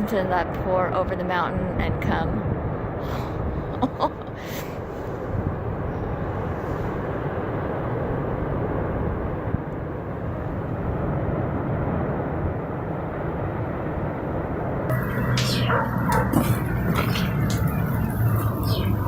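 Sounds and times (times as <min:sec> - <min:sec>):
deep rushing rumble: 0:05.2 - 0:19.0.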